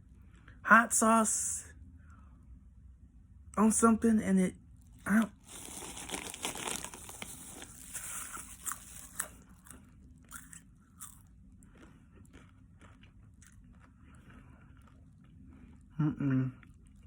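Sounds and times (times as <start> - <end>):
person chewing popcorn: 5.0 - 17.0.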